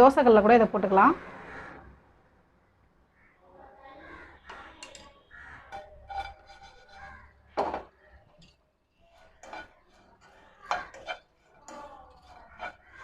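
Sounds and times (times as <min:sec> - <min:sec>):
bread stirred in a dry pan: 0:04.5 - 0:13.0
spatula clanking against pan: 0:04.5 - 0:13.0.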